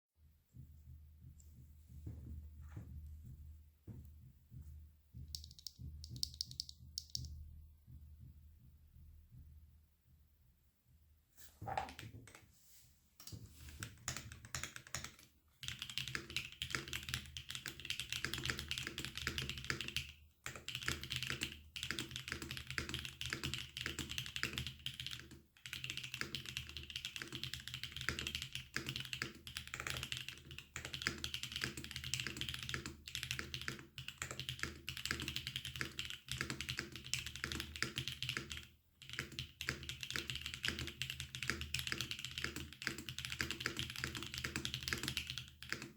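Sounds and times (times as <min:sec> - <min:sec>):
clacky mechanical keyboard typing: 0:05.3 - 0:07.3, 0:13.8 - 0:45.9.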